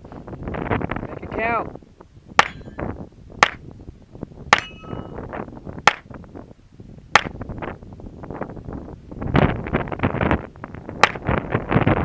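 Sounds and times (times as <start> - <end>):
steel target ringing: 2.4 - 2.9, 4.6 - 5.2.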